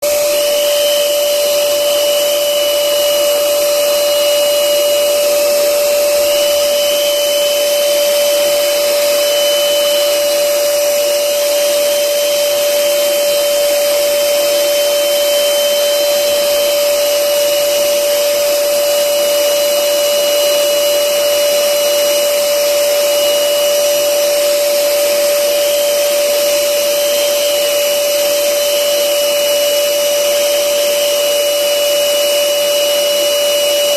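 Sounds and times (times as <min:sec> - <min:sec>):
electric air blower whining: 0:00.0 - 0:33.9.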